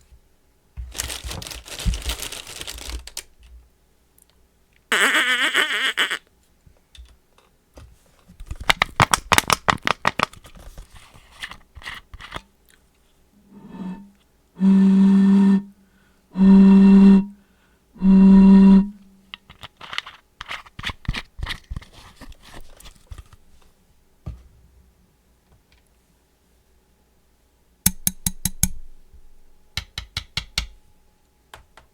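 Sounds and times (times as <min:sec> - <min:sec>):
low held voiced notes: 0:13.4 - 0:15.7, 0:16.3 - 0:17.4, 0:18.0 - 0:19.2.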